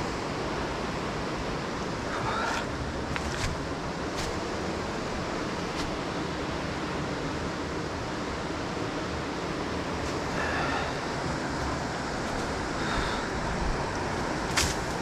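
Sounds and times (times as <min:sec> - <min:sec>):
river rapids roaring: 0:09.0 - 0:15.0.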